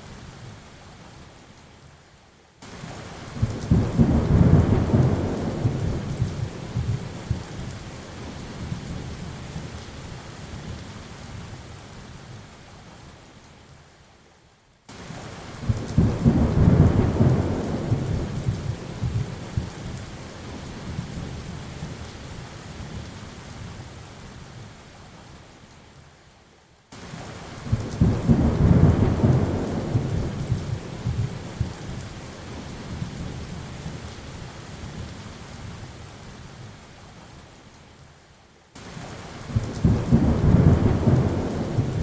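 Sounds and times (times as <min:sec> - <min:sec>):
steady rain: 0:00.0 - 0:42.0
thunder rolling: 0:39.5 - 0:42.0.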